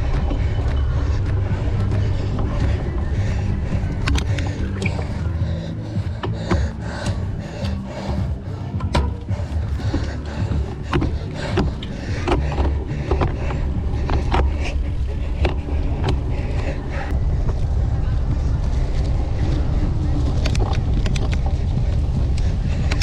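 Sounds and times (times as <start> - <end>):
wind buffeting microphone: 0.0 - 23.0
bicycle clicks and rattles: 8.8 - 23.0.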